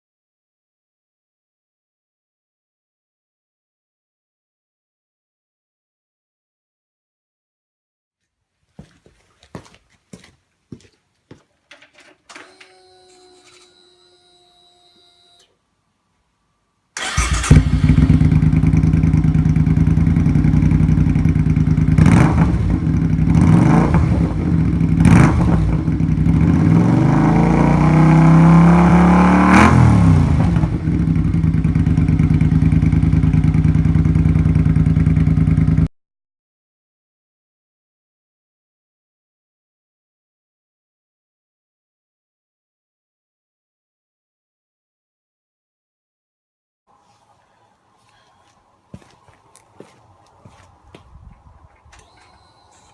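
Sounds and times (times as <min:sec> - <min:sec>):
short electric hum: 0:12.3 - 0:15.6, 0:51.9 - 0:52.9
motorcycle engine idling and revving: 0:17.0 - 0:35.9
clicks: 0:51.8 - 0:52.9.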